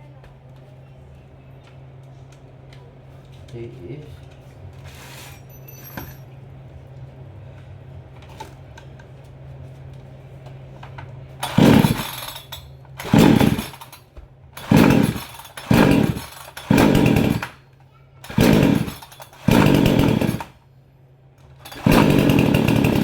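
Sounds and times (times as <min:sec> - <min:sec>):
chainsaw recoil starter pulls: 0:11.4 - 0:14.0, 0:14.6 - 0:17.6, 0:18.2 - 0:20.6, 0:21.6 - 0:23.0.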